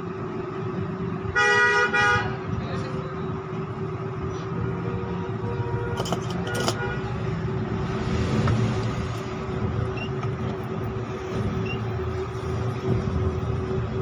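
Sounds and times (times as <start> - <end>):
rough rumbling noise: 5.9 - 14.0.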